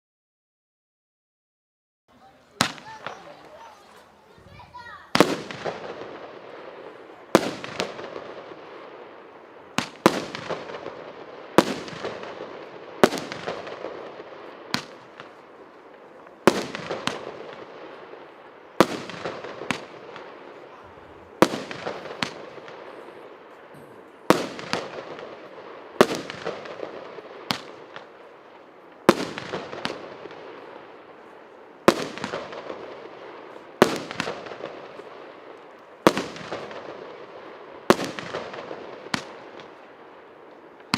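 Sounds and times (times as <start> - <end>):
firework battery bangs: 2.6 - 9.1
crackling after bangs: 2.6 - 40.9.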